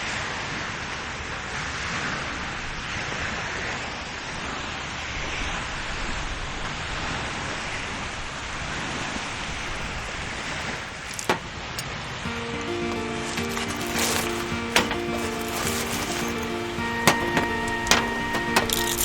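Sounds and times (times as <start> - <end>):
lake waves on shore: 12.3 - 19.0.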